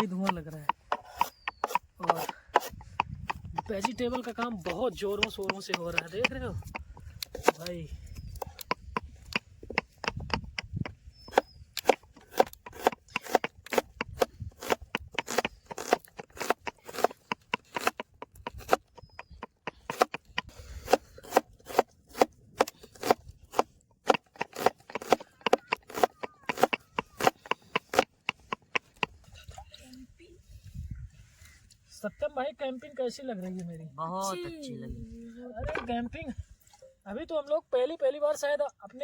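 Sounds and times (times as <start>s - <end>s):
knife chopping vegetables: 0.0s - 7.7s, 8.7s - 29.1s.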